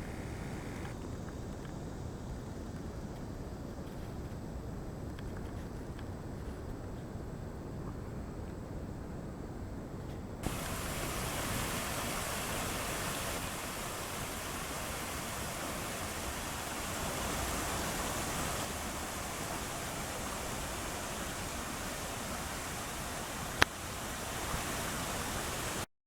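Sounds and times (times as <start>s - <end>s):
flowing water rushing: 0.0s - 1.0s, 10.4s - 25.9s.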